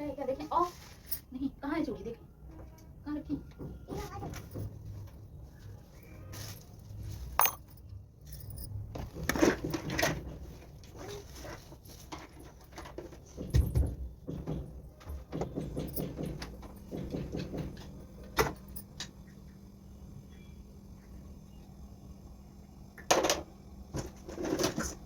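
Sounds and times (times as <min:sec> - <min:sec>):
small hard objects clinking: 0:07.3 - 0:08.8.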